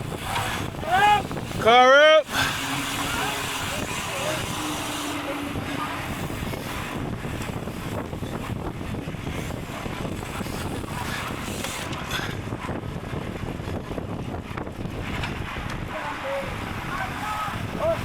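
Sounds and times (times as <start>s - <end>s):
tyre and road rumble: 0.0s - 18.0s
wind buffeting microphone: 0.0s - 18.0s.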